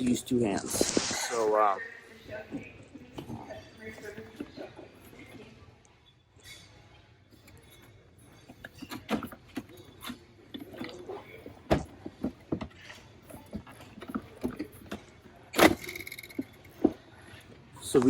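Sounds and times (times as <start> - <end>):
cash register clicks and rattles: 13.6 - 16.8.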